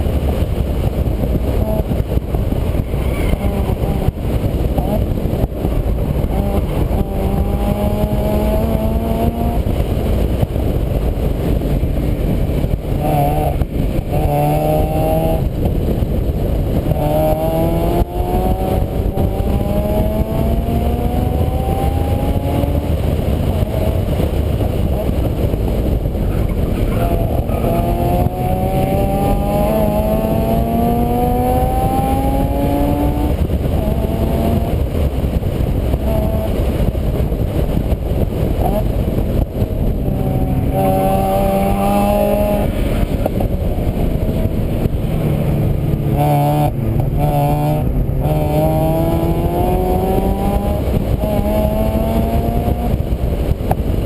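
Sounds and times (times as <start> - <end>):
heavy low rumbling: 0.0 - 54.0
vehicle engine shifting gears: 0.0 - 54.0.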